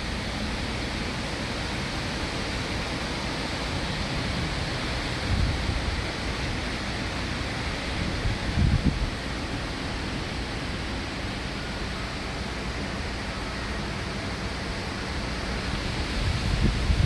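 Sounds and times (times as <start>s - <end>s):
wind rushing through trees: 0.0s - 17.0s
wind buffeting microphone: 3.8s - 6.7s, 7.8s - 9.4s, 15.8s - 17.0s.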